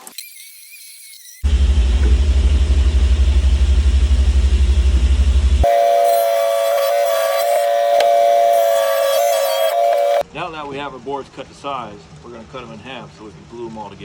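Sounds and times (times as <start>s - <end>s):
high-pitched motor whine: 1.4s - 10.2s.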